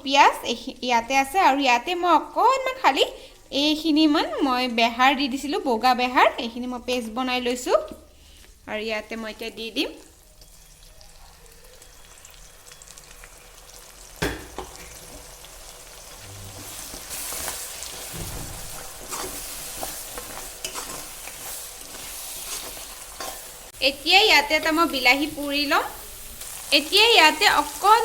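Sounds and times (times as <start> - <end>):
paste sizzling in hot oil: 10.0 - 28.0
sharp knock: 18.1 - 19.1.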